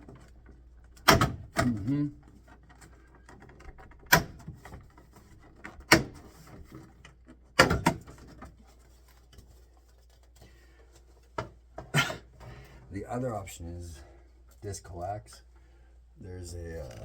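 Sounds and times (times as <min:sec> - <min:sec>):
small door knocks and clunks: 0:01.0 - 0:01.9, 0:03.2 - 0:04.9, 0:05.5 - 0:06.5, 0:07.5 - 0:08.4.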